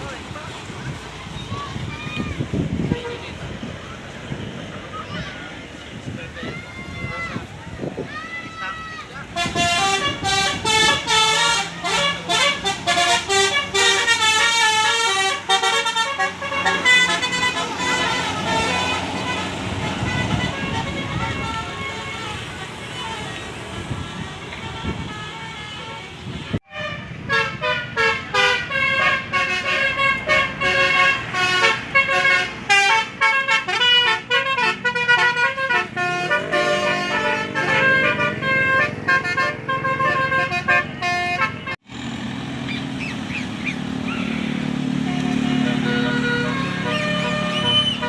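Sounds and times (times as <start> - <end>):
traffic noise: 0.0 - 48.0
musical bus horn tune: 2.7 - 3.5, 9.3 - 41.9, 44.8 - 48.0.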